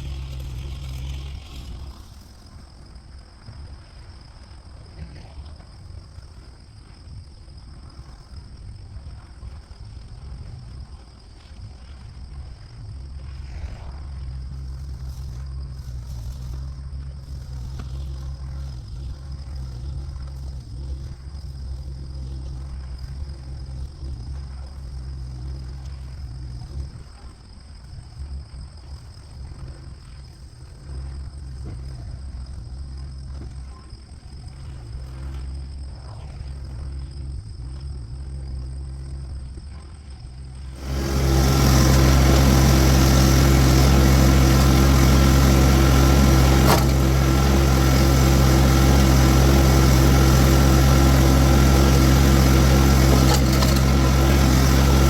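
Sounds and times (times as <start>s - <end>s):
diesel engine running: 0.0s - 3.8s, 8.9s - 55.0s
steady high whine: 40.5s - 55.0s.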